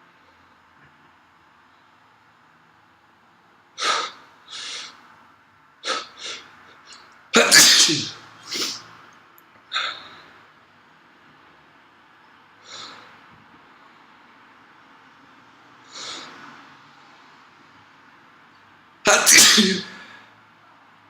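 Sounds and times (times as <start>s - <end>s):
person sneezing: 3.8s - 5.0s, 5.8s - 6.5s, 7.4s - 8.9s, 19.1s - 20.2s.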